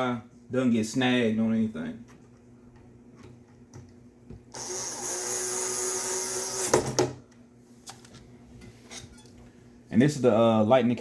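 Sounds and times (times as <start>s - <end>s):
power drill running: 4.5s - 7.2s.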